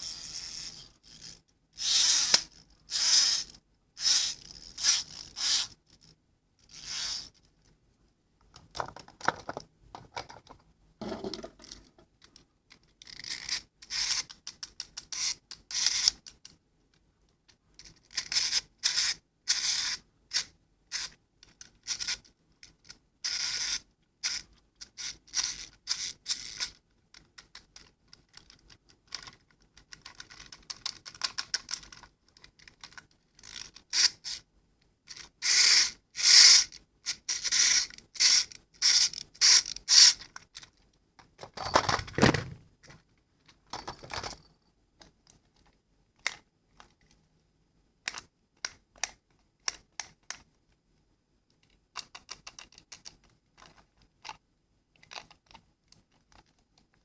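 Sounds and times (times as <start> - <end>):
clicks and taps of handled toys: 8.4 - 19.0, 26.6 - 34.1, 45.0 - 47.2, 48.0 - 50.5, 51.5 - 54.4, 55.0 - 57.0.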